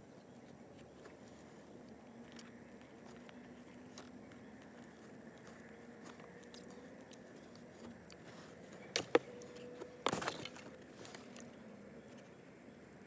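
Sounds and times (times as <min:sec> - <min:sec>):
scraping rustle: 0:07.3 - 0:11.5.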